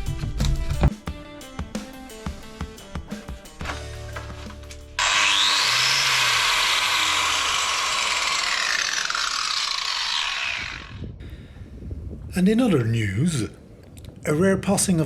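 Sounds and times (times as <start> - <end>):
angle grinder whine: 3.6 - 11.2
angle grinder running: 4.2 - 11.2.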